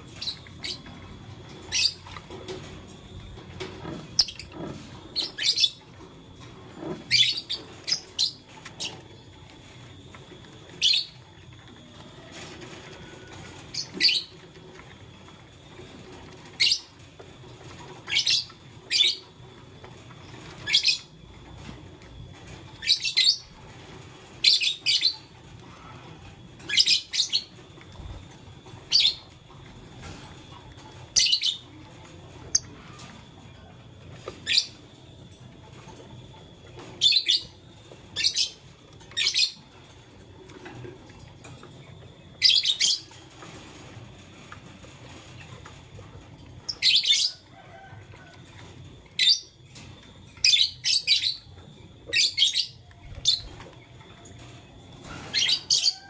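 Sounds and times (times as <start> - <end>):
bird chirping: 42.3 - 43.1.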